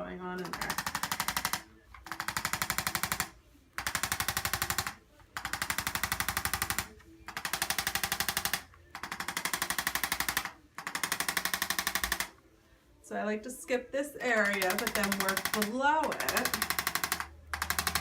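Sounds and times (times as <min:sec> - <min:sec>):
adjusting instrument rapid taps: 0:14.4 - 0:18.0.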